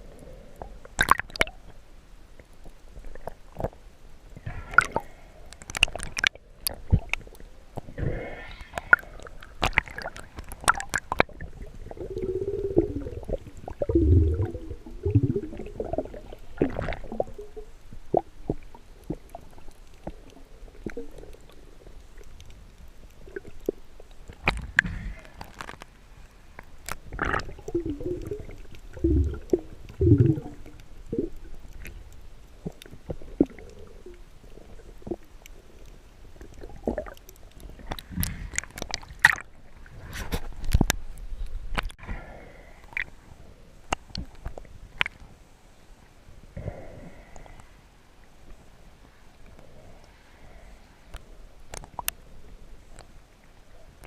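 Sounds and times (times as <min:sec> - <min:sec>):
water sloshing and gurgling: 0:00.0 - 0:01.8, 0:02.5 - 0:42.0.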